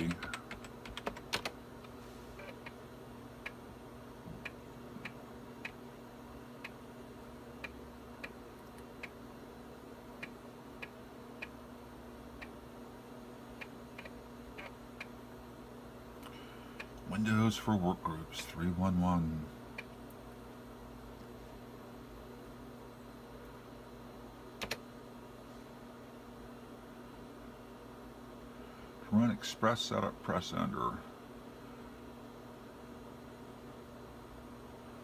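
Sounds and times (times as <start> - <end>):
computer keyboard keystrokes: 0.0 - 1.6, 24.6 - 24.8
floppy drive ticking: 0.0 - 1.6, 2.4 - 3.7, 4.3 - 5.9, 7.5 - 9.2
steady low hum: 0.0 - 35.0.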